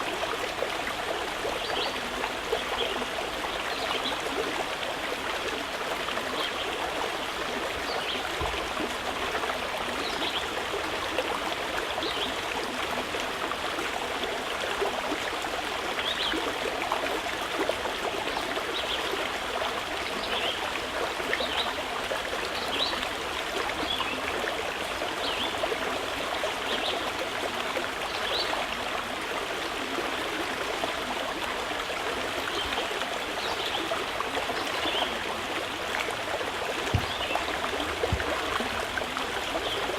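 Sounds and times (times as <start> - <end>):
running water trickling: 32.2 - 39.9.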